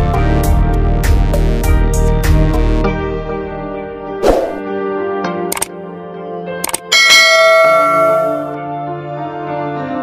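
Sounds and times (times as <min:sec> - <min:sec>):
sharp clicks: 0:05.5 - 0:05.7, 0:06.6 - 0:06.9
bell-like chord ringing: 0:06.9 - 0:08.7.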